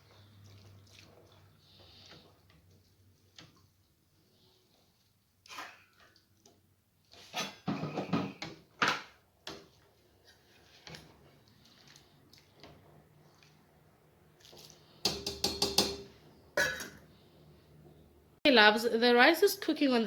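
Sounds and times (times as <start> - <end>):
cookware clattering: 15.1 - 17.0.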